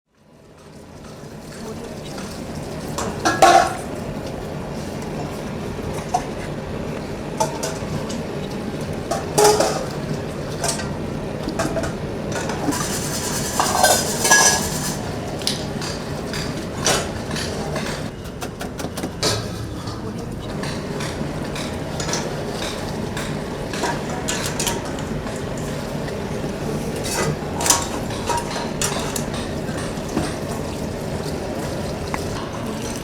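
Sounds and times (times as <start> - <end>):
workshop background noise: 0.2 - 33.0
copper vessels clinking: 1.5 - 4.4, 7.4 - 18.1, 19.2 - 33.0.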